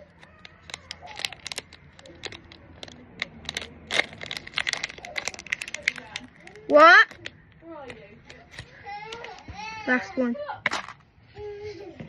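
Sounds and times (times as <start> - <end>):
packaging bag crinkling: 0.0 - 7.3.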